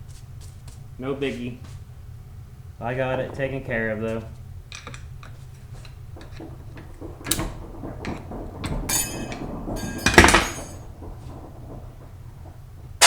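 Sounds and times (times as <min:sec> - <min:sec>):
metal tools clinking: 0:04.7 - 0:10.8.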